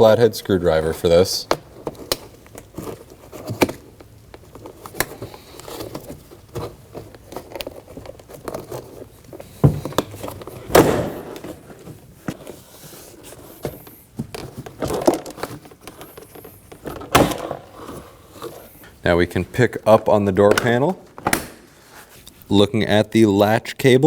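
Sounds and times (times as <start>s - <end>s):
plastic clicks and scrapes: 1.5s - 18.9s
loud pops of clips releasing: 17.0s - 17.7s.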